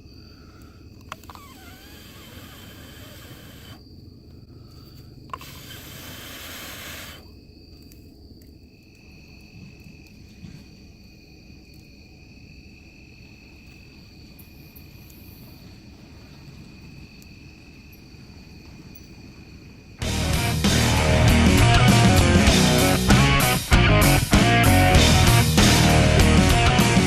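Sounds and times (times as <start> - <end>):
night insects chirring: 0.0 - 27.0
faint clicks: 0.6 - 10.5
hissing rush: 1.1 - 3.8, 5.3 - 7.3.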